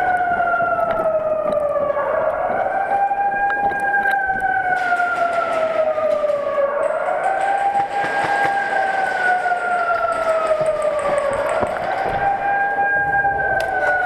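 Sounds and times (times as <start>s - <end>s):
wailing siren: 0.0s - 14.0s.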